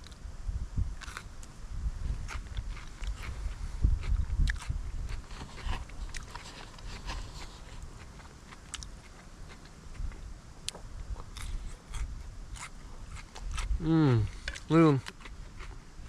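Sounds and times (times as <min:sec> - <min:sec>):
man chewing: 0:02.2 - 0:16.0.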